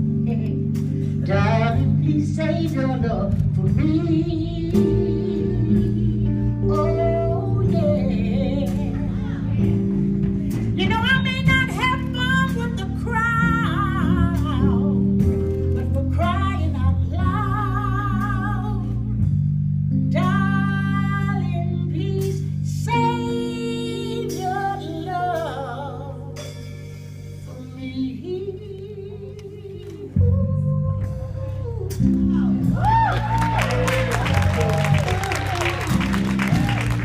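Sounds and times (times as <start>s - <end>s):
bass: 0.0s - 37.0s
guitar: 28.6s - 37.0s.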